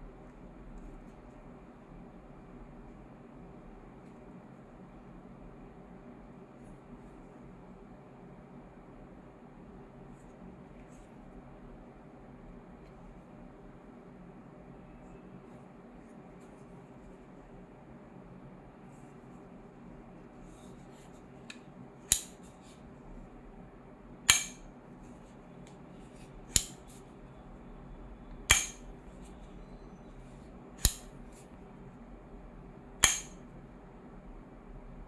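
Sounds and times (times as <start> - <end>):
gas lighter clicking: 22.1 - 22.3, 24.3 - 24.6, 26.6 - 26.8, 28.5 - 28.8, 30.8 - 31.1, 33.0 - 33.4.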